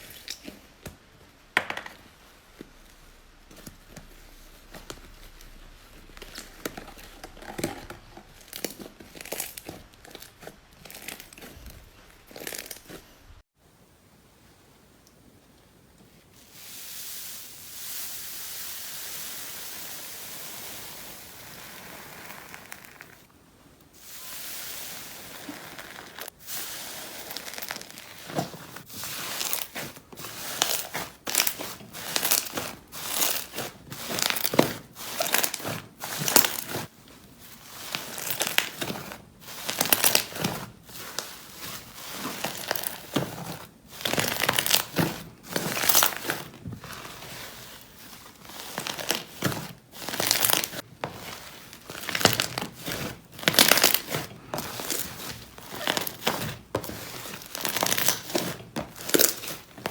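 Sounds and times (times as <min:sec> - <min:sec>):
soft steady hiss: 0:00.0 - 0:54.1
slime crackling squishes: 0:02.1 - 0:13.4, 0:25.2 - 0:59.9.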